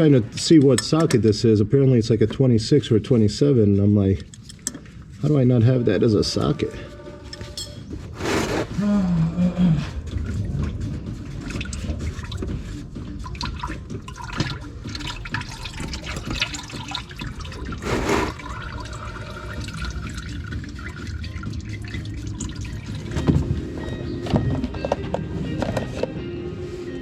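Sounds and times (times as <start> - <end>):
short rush of noise: 8.2 - 8.8, 17.8 - 18.4
oil trickling into a pan: 13.3 - 17.8, 18.4 - 23.2.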